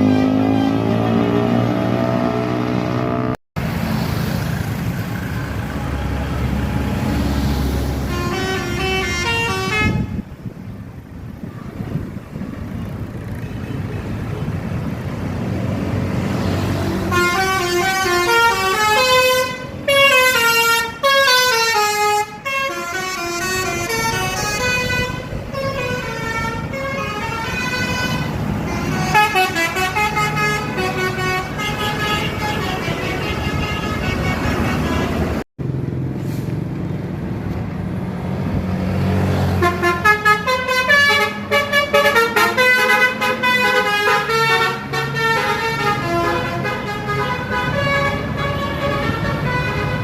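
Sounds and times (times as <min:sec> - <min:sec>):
multi-tone bus horns playing tunes: 0:00.0 - 0:03.4, 0:07.8 - 0:10.3, 0:16.8 - 0:35.4, 0:39.5 - 0:50.0
bus engine: 0:00.0 - 0:50.0
traffic noise: 0:00.0 - 0:50.0.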